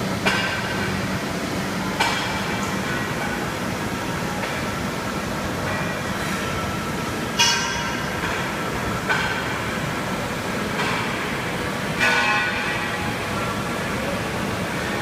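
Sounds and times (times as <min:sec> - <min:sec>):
workshop machine hum: 0:00.0 - 0:15.0
metal strikes ringing like a bell: 0:01.9 - 0:09.9, 0:10.7 - 0:13.6.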